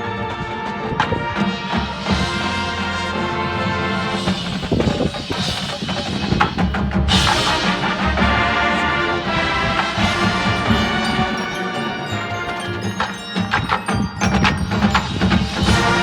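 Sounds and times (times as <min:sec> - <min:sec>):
marching band playing: 0:00.0 - 0:16.0
cymbal crash: 0:01.9 - 0:11.8.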